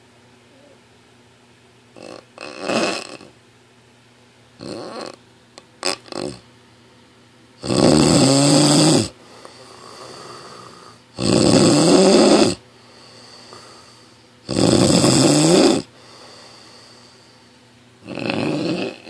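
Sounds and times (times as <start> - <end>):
loud snoring: 2.0 - 3.4, 4.6 - 5.2, 5.8 - 6.4, 7.6 - 17.0, 18.0 - 19.0
quiet breathing: 9.2 - 11.2, 12.6 - 14.4, 15.8 - 19.0.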